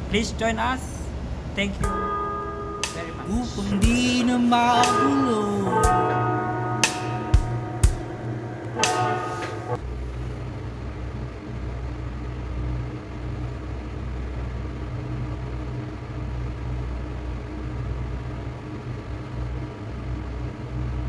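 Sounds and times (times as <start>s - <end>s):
machine low hum: 0.0s - 21.0s
music: 1.8s - 9.8s.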